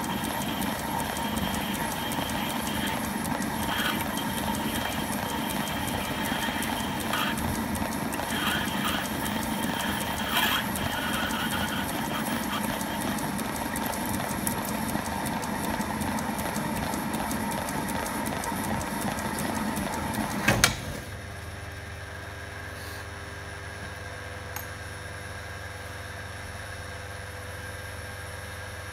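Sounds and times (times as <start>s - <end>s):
fine rapid ticking: 0.0s - 20.4s
metal lathe machining brass: 0.0s - 20.4s.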